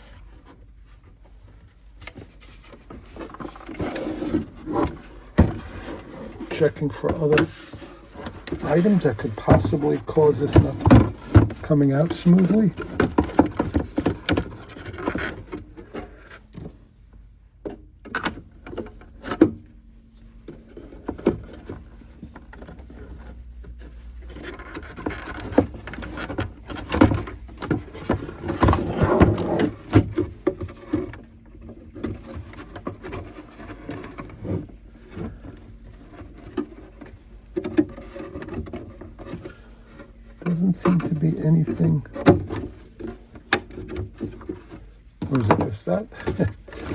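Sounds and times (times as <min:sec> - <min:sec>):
scraping and rubbing: 0:02.0 - 0:16.5, 0:20.0 - 0:46.9.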